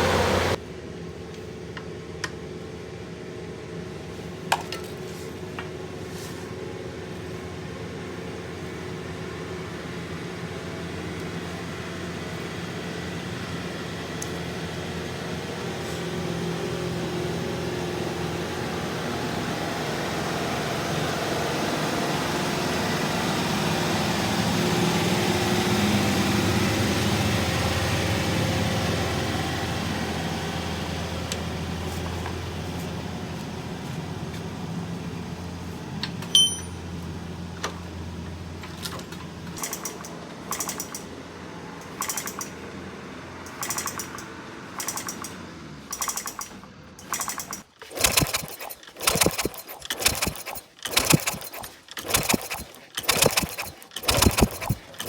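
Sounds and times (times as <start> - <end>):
sharp metallic ping: 36.3 - 36.8
motor humming: 47.0 - 55.0.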